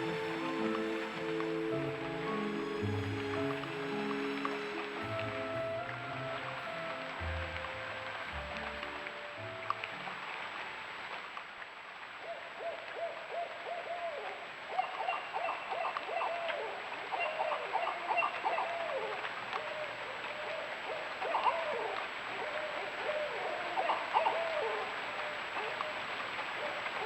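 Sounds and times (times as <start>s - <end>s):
owls hooting and cackling: 12.2s - 26.9s.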